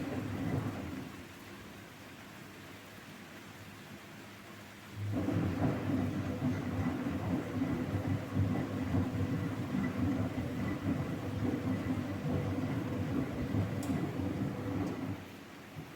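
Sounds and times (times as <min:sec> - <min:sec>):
washing machine churning: 0:00.0 - 0:01.4, 0:05.0 - 0:15.9
faint motor hum: 0:00.0 - 0:01.5, 0:04.8 - 0:15.9.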